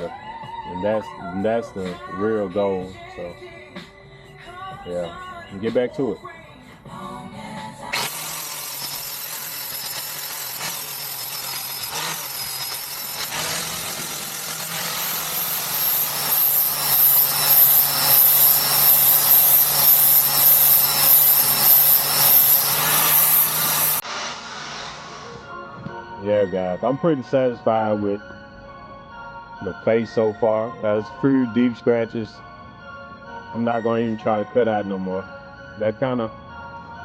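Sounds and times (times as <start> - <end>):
angle grinder grinding metal: 7.9 - 25.5.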